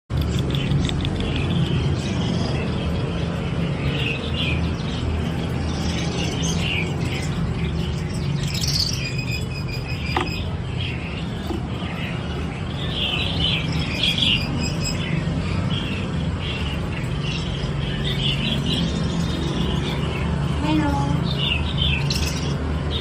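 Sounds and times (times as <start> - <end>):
parrot chirping and squealing: 4.2 - 15.4.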